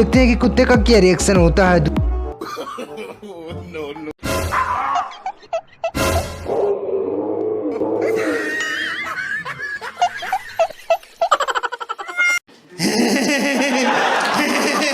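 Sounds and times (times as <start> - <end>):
laughter in ha-ha bursts: 2.4 - 3.4, 8.2 - 14.9.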